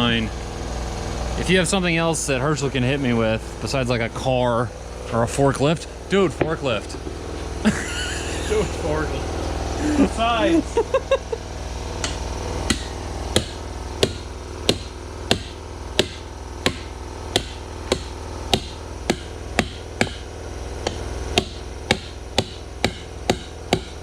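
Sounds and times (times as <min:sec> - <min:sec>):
steady low hum: 0:00.0 - 0:24.0
hammer blows: 0:12.0 - 0:24.0.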